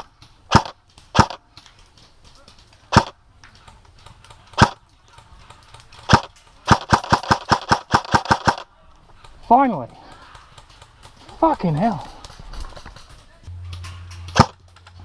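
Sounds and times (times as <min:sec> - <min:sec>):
airsoft gun shots: 0:00.5 - 0:01.4, 0:02.9 - 0:03.2, 0:04.6 - 0:04.8, 0:06.1 - 0:08.7, 0:14.3 - 0:14.6.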